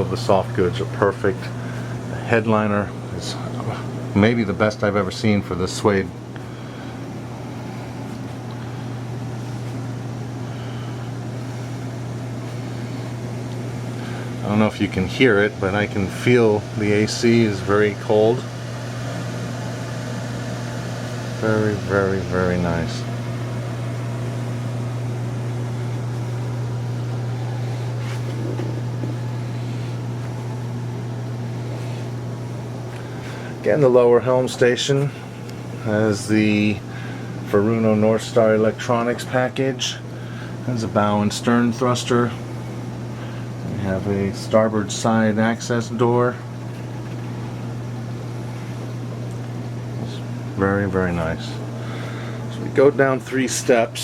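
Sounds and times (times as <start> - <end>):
air conditioning hum and hiss: 0.0 - 54.0.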